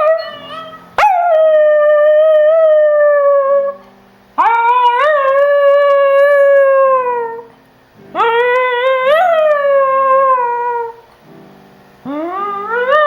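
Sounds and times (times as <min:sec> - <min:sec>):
dog howling: 0:00.0 - 0:03.8, 0:12.1 - 0:13.0.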